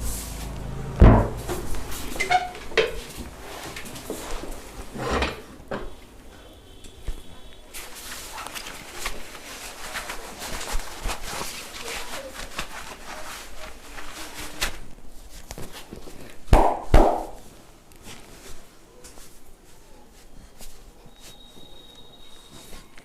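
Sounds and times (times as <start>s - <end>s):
hands rubbing skin and hair: 7.1s - 21.8s
hand smacks: 16.5s - 17.4s.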